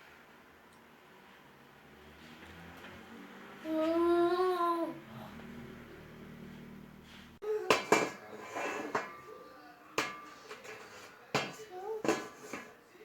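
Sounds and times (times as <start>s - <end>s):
hard objects knocking: 7.6s - 9.3s, 10.0s - 12.8s.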